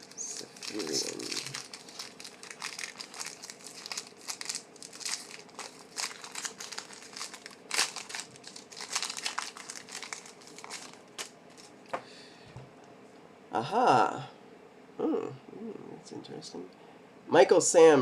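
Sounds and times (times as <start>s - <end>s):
foil wrapper crinkling: 0.0s - 11.8s.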